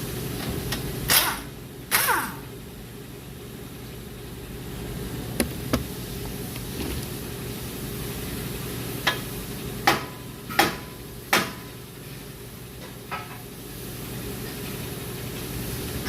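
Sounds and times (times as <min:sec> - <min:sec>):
steady low hum: 0:00.0 - 0:12.8.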